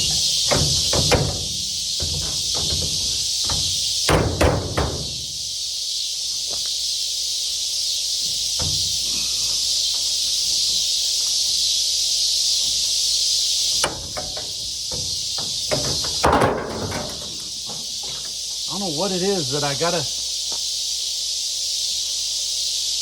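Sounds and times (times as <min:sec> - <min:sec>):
light knocks: 0:00.0 - 0:05.3, 0:08.2 - 0:09.1, 0:13.8 - 0:18.4
high-pitched insect chorus: 0:00.0 - 0:23.0.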